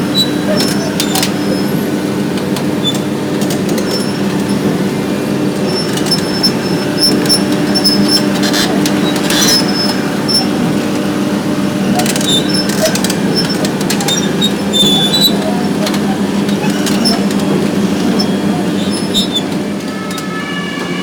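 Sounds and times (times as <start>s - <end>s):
excavator engine hum: 0.0s - 20.3s
high-pitched squeaks: 5.7s - 10.9s, 11.8s - 21.0s.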